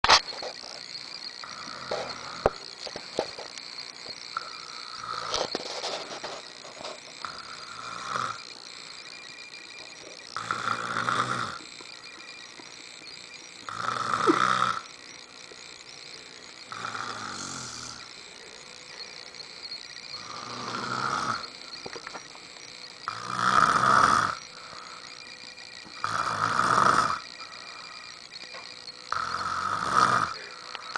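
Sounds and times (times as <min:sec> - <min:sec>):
man snoring: 0:01.4 - 0:02.6, 0:04.3 - 0:05.6, 0:07.2 - 0:08.5, 0:10.3 - 0:11.7, 0:13.7 - 0:14.9, 0:16.7 - 0:18.1, 0:20.2 - 0:21.6, 0:23.0 - 0:25.2, 0:25.9 - 0:28.0, 0:29.1 - 0:30.9.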